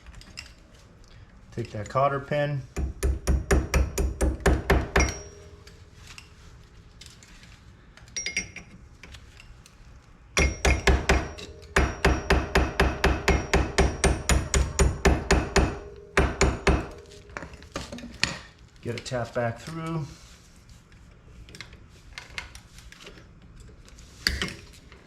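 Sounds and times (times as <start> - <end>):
hammer tapping metal pin: 2.8 - 5.7, 10.4 - 17.5.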